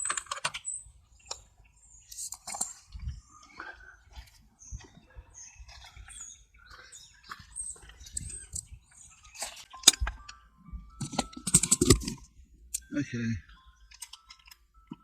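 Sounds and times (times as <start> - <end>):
tools being handled clicking: 11.0 - 12.8
rattling clicks: 11.0 - 12.9.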